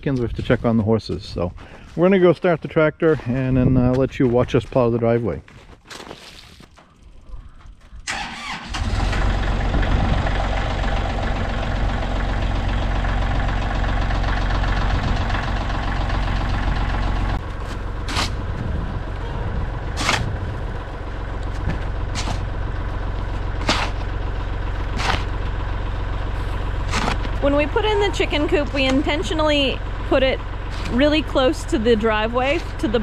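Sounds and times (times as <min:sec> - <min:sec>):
diesel tractor engine idling: 0:06.9 - 0:33.0.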